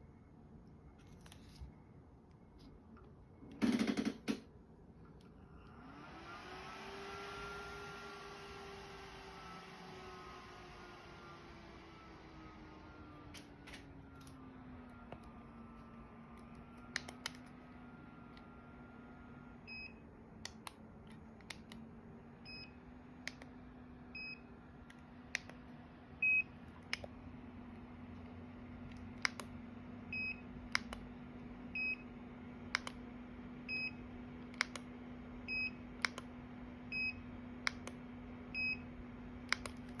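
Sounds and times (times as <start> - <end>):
sharp clicks: 39.5 - 40.0.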